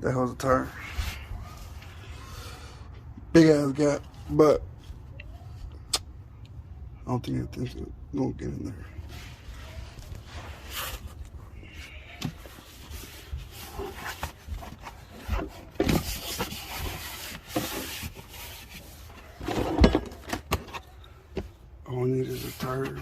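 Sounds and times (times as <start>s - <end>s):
rubbing and scraping: 9.0s - 20.9s, 22.0s - 23.0s.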